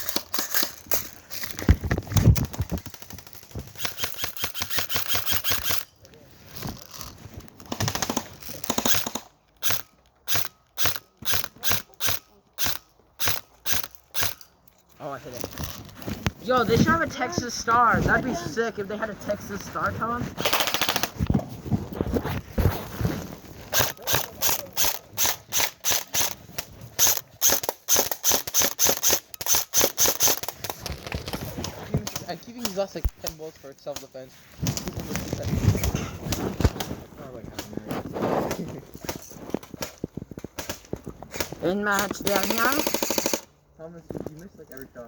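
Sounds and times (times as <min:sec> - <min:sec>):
airsoft gun shots: 0:20.4 - 0:21.2, 0:42.3 - 0:43.4.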